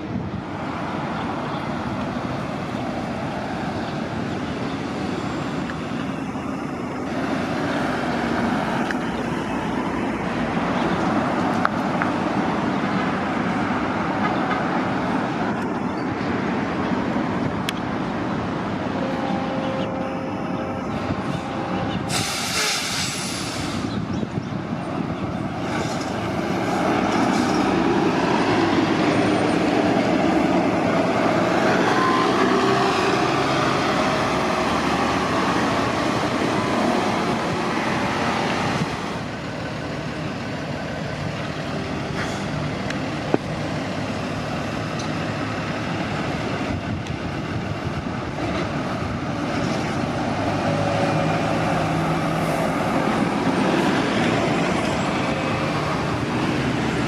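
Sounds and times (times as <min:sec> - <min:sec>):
bus engine running: 0:00.0 - 0:57.0
air brake hiss: 0:22.1 - 0:23.9.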